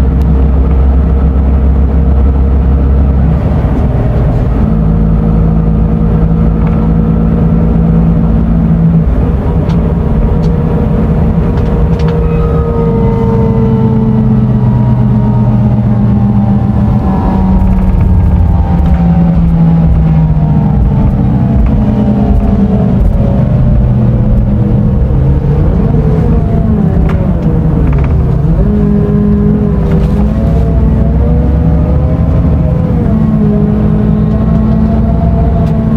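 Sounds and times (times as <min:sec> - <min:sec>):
diesel coach engine drone: 0:00.0 - 0:35.9.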